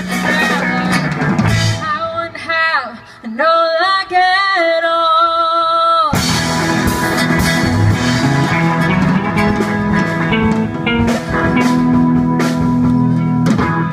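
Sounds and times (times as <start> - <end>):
drum kit with cymbals: 0.0 - 1.9, 6.1 - 13.9
walking bass: 0.0 - 2.3, 6.2 - 13.9
electric guitar lines: 6.1 - 13.9.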